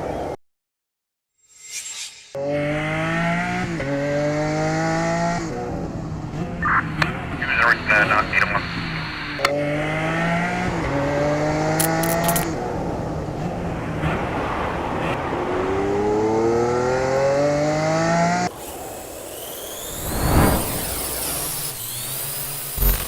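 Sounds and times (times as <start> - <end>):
sports car engine accelerating: 2.4 - 23.0
car whooshing past: 12.4 - 18.4, 19.8 - 21.6.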